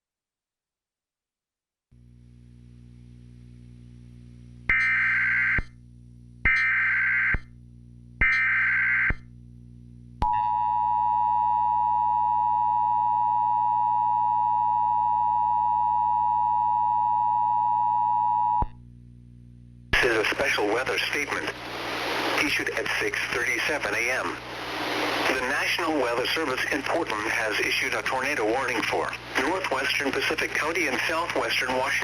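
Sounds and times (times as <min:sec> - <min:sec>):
faint low hum: 0:02.0 - 0:05.1, 0:13.6 - 0:32.0
steady attention tone: 0:20.0 - 0:32.0.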